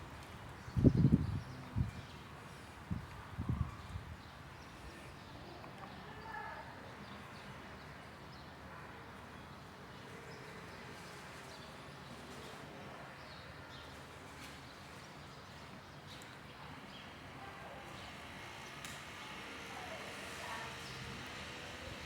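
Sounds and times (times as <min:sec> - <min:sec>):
outdoor background hiss: 0:15.4 - 0:22.0.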